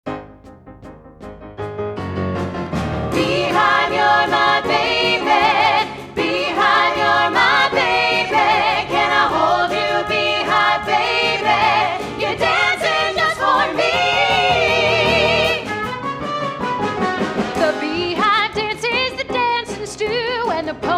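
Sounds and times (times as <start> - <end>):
women singing in harmony: 3.1 - 15.7.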